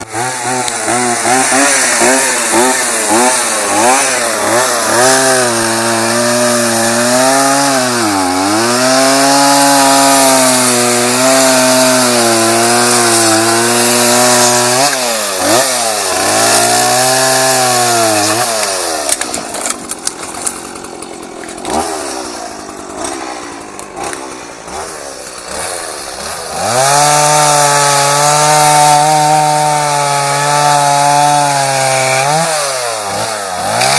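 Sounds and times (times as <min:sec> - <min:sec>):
chainsaw running: 0:00.0 - 0:33.9.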